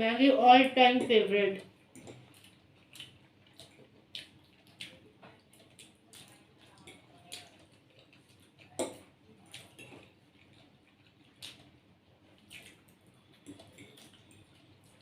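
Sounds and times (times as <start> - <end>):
wet eating smacks: 1.6 - 15.0.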